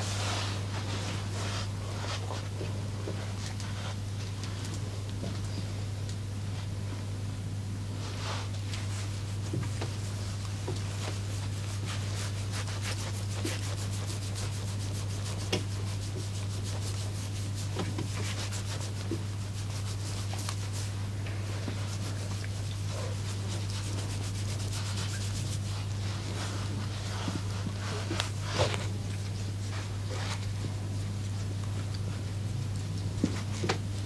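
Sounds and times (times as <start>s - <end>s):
hands rubbing skin: 8.1s - 31.8s.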